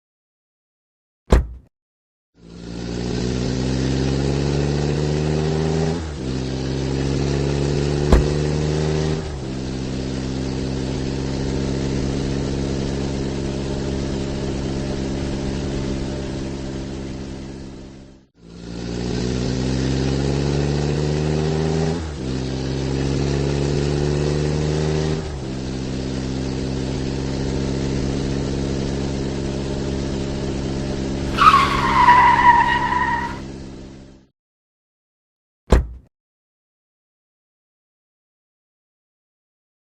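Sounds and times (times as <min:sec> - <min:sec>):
car engine accelerating: 0:02.4 - 0:17.9, 0:18.6 - 0:33.9
tyre squeal: 0:31.3 - 0:33.5.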